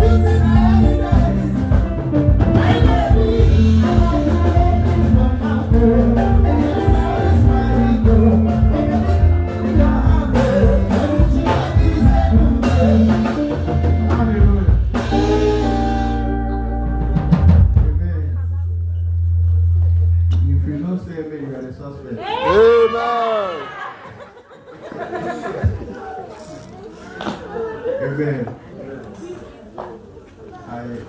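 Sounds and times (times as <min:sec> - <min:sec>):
loud music with singing: 0:00.0 - 0:15.4.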